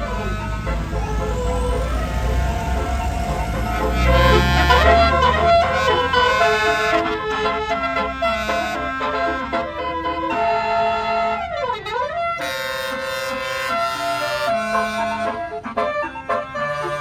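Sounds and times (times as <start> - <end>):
bus horn playing a tune: 0.0 - 17.0
low engine rumble: 0.0 - 17.0.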